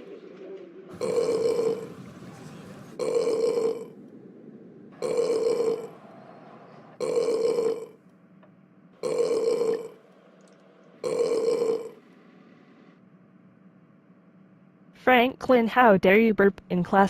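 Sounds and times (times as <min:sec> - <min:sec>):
loud burp: 0:00.9 - 0:02.0, 0:03.0 - 0:04.0, 0:05.0 - 0:06.0, 0:07.0 - 0:08.0, 0:09.0 - 0:10.0, 0:11.0 - 0:12.0.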